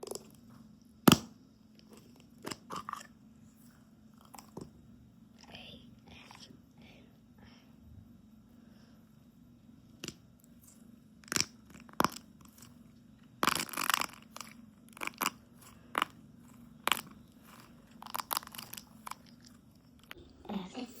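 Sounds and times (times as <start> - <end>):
wax shell cracking and crunching: 1.0 - 3.2, 4.1 - 4.7, 10.0 - 20.2.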